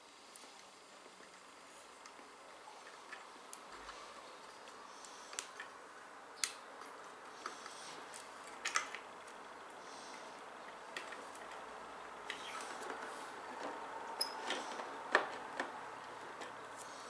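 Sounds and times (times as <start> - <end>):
computer parts handling noises: 6.8 - 9.4.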